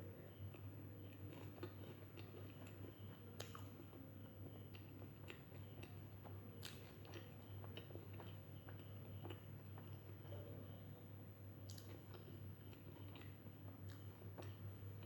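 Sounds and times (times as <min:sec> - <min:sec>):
steady low hum: 0:00.0 - 0:15.0
close-miked chewing: 0:00.3 - 0:10.8, 0:11.6 - 0:15.0
wet mouth clicks and smacks: 0:11.7 - 0:13.3.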